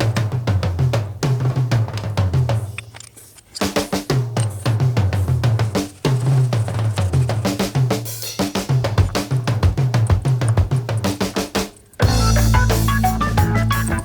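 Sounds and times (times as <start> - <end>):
drum kit beat: 0.0 - 2.8, 3.6 - 14.0
bass line: 12.0 - 14.0.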